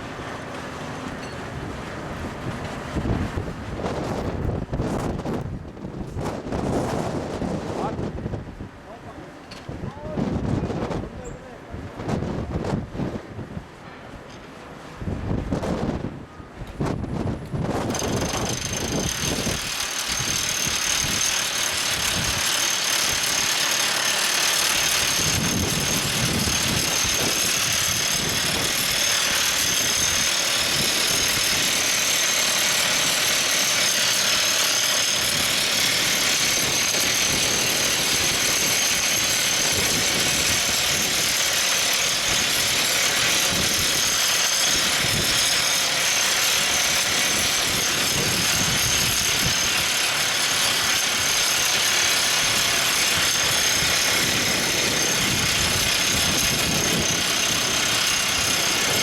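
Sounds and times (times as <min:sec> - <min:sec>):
drill rig engine: 0:17.6 - 0:59.0
rock drill hammering: 0:17.9 - 0:59.0.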